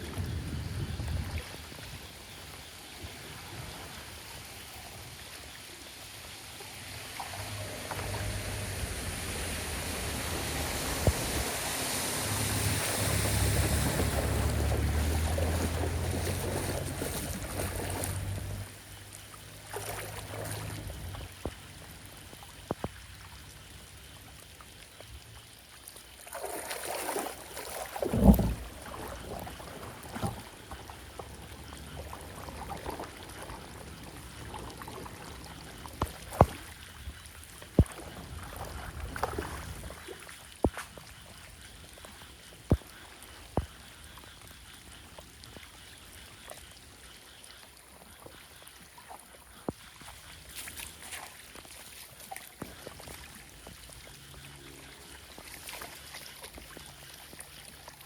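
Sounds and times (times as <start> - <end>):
floodwater rushing into drain: 0.0 - 58.0
low rumble: 7.2 - 18.8.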